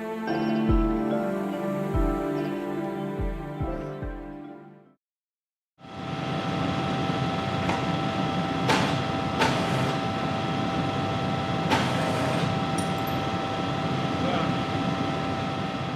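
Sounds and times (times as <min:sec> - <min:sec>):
background music: 0:00.0 - 0:05.0.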